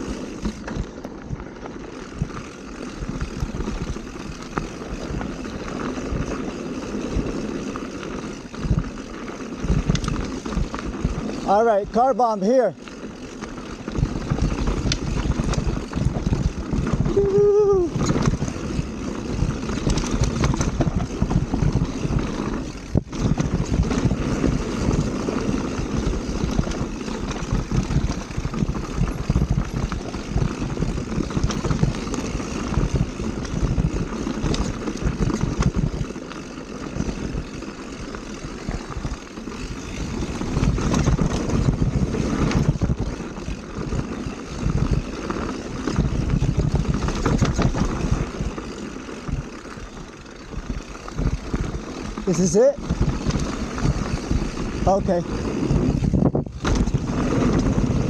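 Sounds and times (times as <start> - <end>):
bike tyres rattling on dirt trail: 0.0 - 58.0
wind buffeting microphone: 13.8 - 36.2, 38.2 - 58.0.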